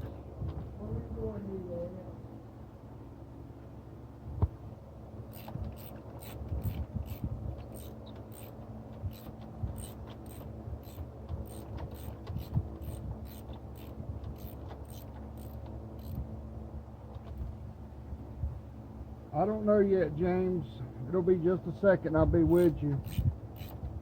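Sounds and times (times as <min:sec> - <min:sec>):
low background rumble: 0:00.0 - 0:24.0
hand ratchet clicking: 0:05.3 - 0:16.2, 0:22.6 - 0:23.8.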